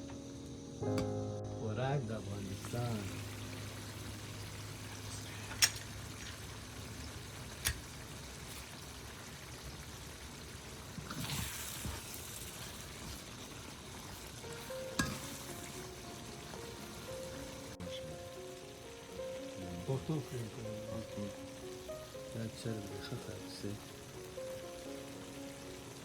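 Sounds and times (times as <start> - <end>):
food sizzling in a pan: 2.2 - 26.0.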